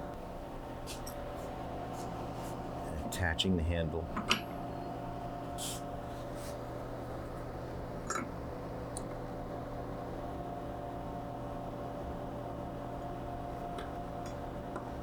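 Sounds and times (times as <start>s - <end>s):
low electrical hum: 0.0s - 15.0s.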